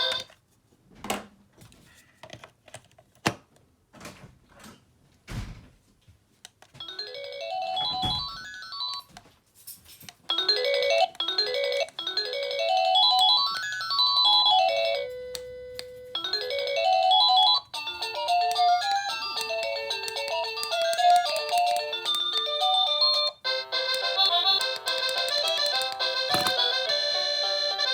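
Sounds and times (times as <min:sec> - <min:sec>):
doorbell electronic chime melodies: 0:06.8 - 0:09.1, 0:10.3 - 0:20.5.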